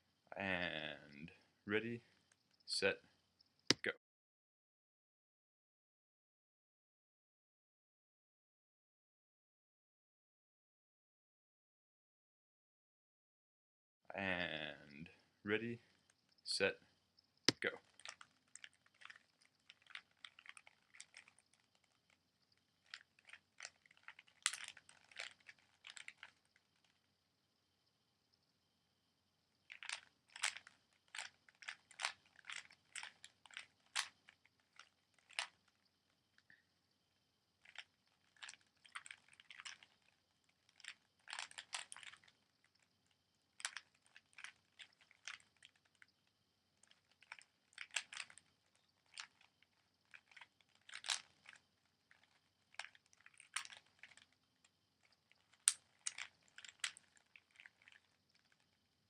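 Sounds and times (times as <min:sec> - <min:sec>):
puzzle cube plastic clicks: 0:17.5 - 0:22.2, 0:22.8 - 0:27.0, 0:29.6 - 0:35.8, 0:37.6 - 0:42.8, 0:43.5 - 0:46.1, 0:46.8 - 0:58.7.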